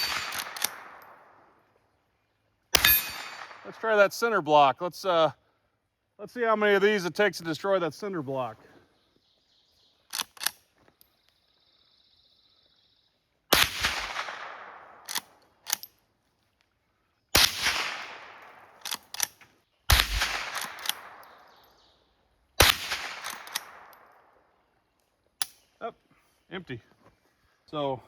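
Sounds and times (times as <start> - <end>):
rifle shots with echo: 0.0 - 1.6, 2.7 - 4.0, 13.5 - 15.4, 17.4 - 19.1, 19.9 - 21.9, 22.6 - 24.5
rifle lever clicks: 10.1 - 10.6, 18.8 - 19.4, 20.6 - 21.1, 23.2 - 23.7.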